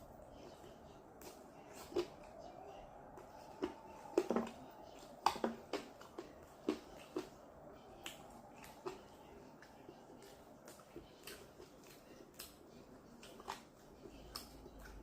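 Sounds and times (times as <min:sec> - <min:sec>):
wet mouth clicks and smacks: 0:03.2 - 0:15.0.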